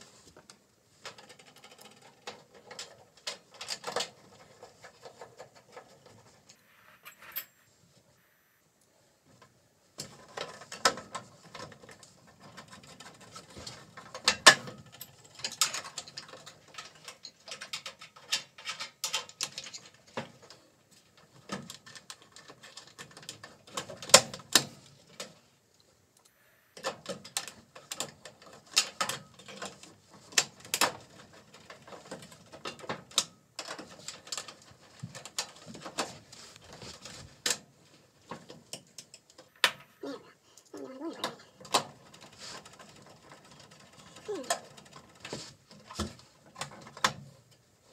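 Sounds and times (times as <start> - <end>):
tools and sheet metal clatter: 0.9 - 7.6, 10.0 - 25.3, 26.8 - 39.5, 41.2 - 47.6.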